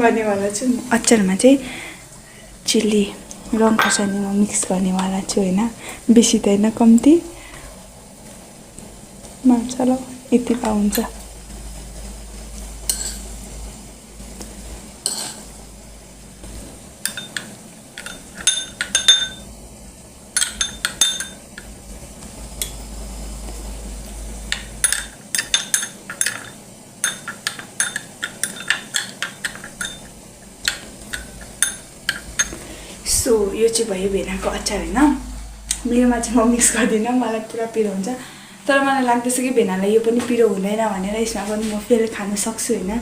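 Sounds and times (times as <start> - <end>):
spoon clinking and scraping bowl: 3.7 - 4.3, 12.9 - 13.3, 15.0 - 15.5, 17.0 - 19.5, 20.4 - 21.7, 24.5 - 32.6.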